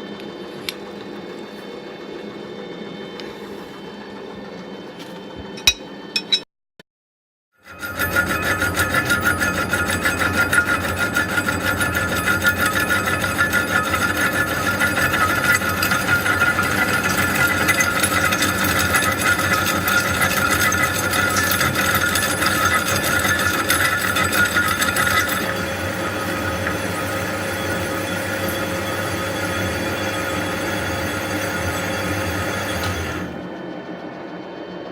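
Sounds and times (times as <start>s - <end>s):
metal lathe cutting: 7.6s - 33.6s.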